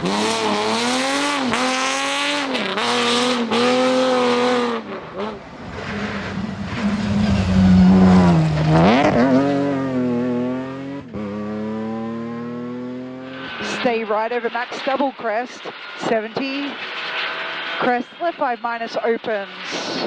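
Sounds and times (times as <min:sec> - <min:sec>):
rally car engine revving: 0:00.0 - 0:20.0.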